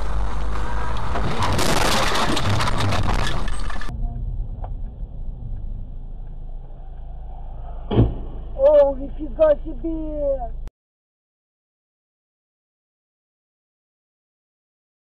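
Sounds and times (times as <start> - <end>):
car crash crunching and debris: 0.0 - 3.9
engine noise: 0.0 - 10.7
loud road noise: 0.0 - 10.7.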